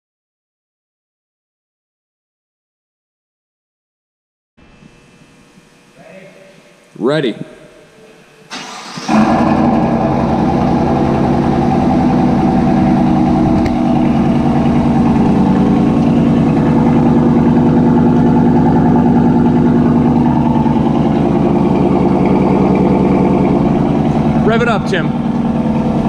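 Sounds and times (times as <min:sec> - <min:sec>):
engine idling: 0:08.4 - 0:26.0.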